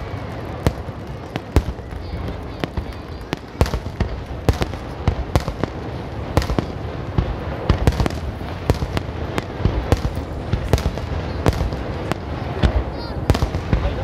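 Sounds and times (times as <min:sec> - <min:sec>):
continuous low rumble: 0:00.0 - 0:14.0
fireworks bangs: 0:00.0 - 0:14.0.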